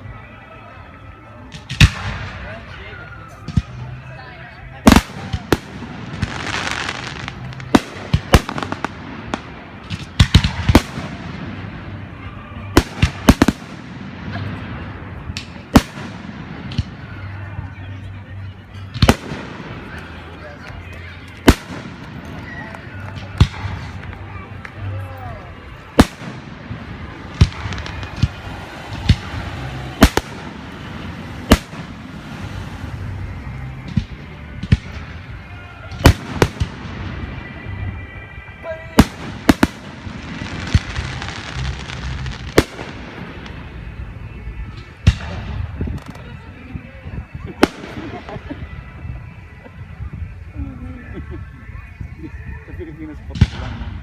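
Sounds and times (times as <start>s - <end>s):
fireworks bangs: 4.7s - 18.0s, 18.7s - 24.9s, 25.5s - 46.2s, 47.2s - 48.5s.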